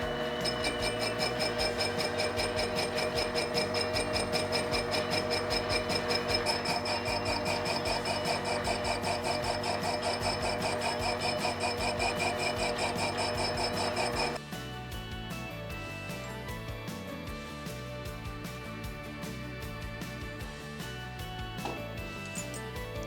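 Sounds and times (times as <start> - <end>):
lathe humming: 0.0 - 14.4
rhythmic ticking: 0.0 - 14.4.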